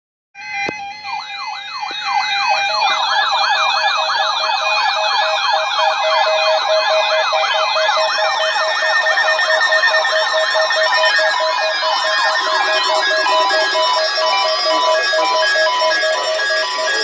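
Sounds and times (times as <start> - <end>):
electronic siren yelp: 0.4 - 17.0
steady pulsing beep: 0.4 - 17.0
high-pitched tones: 9.4 - 17.0.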